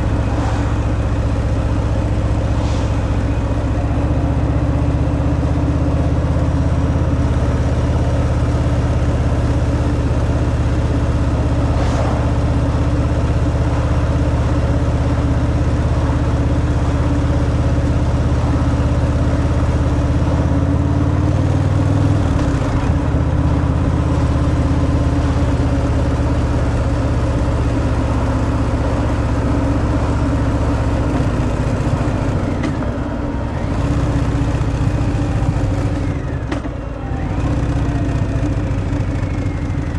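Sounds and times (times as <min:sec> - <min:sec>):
motorcycle engine rumbling: 0:00.0 - 0:39.9
wind and road noise: 0:00.0 - 0:39.9.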